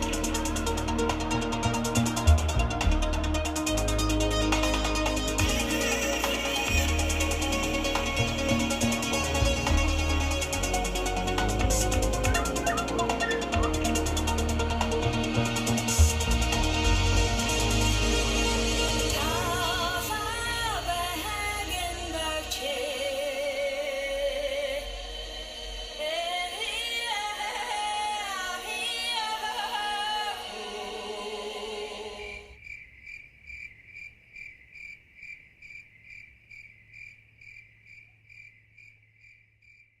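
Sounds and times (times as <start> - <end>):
choral singing with music: 0.0 - 32.6
cricket chirping: 32.4 - 40.0.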